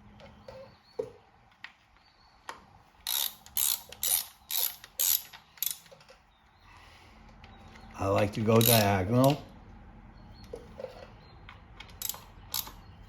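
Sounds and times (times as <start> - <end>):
hand ratchet clicking: 3.0 - 5.9, 8.6 - 9.4, 12.0 - 12.8.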